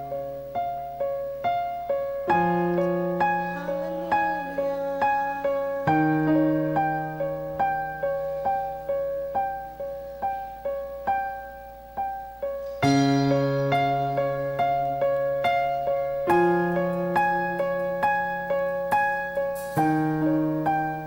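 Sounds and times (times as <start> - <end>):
slow piano keyboard music: 0.0 - 21.0.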